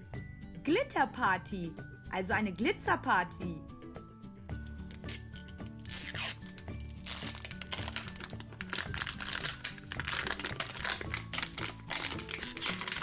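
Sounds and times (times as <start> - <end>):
background music: 0.0 - 13.0
plastic wrapper crinkling and tearing: 4.9 - 13.0.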